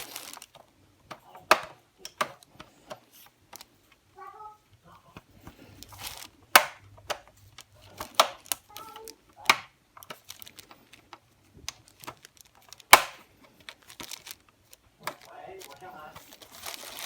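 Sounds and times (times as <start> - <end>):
tools clicking on plastic parts: 5.8 - 17.0.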